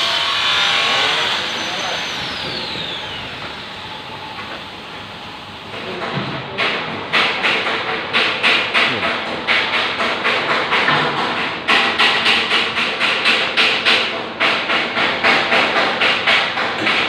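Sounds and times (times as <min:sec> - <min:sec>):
clattering machinery: 0:00.0 - 0:17.0
rapid regular knocking: 0:05.8 - 0:17.0.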